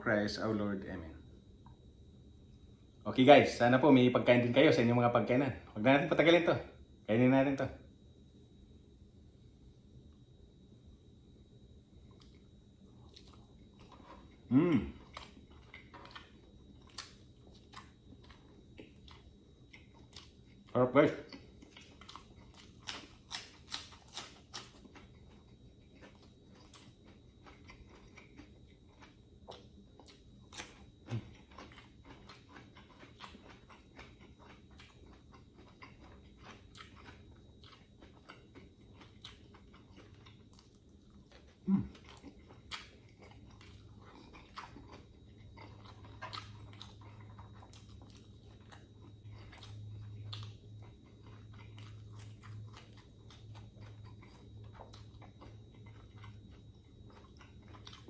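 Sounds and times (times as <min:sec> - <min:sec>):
chewing and crunching food: 0:11.9 - 0:58.0.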